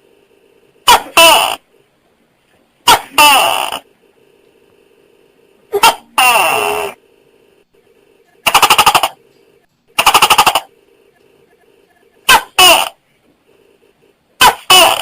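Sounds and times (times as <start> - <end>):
gecko calling: 5.7 - 7.0, 8.2 - 9.2, 10.0 - 13.0.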